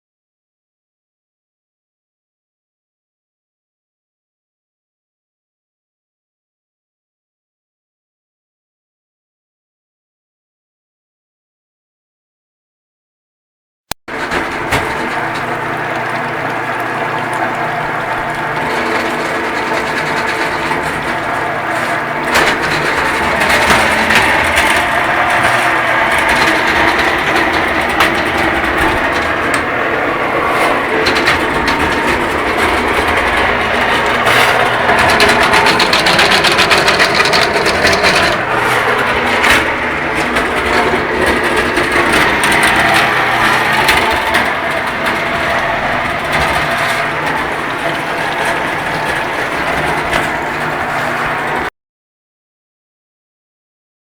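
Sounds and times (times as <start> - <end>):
drain-cleaning machine clattering: 14.1 - 51.7.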